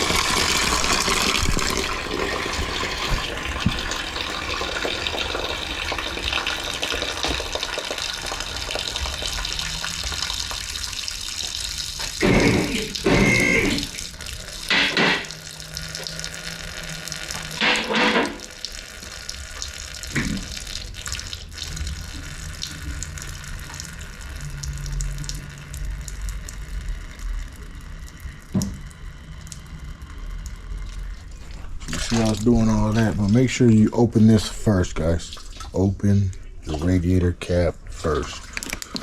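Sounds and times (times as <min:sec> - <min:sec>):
liquid draining into a pan: 0:00.0 - 0:23.9.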